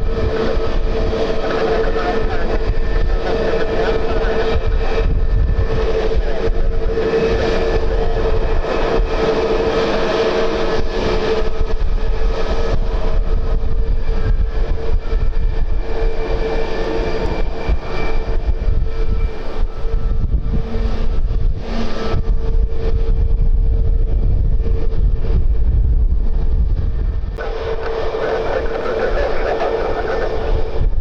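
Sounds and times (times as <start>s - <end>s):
aircraft engines humming: 0.0s - 31.0s
wind rumble on microphone: 0.0s - 31.0s.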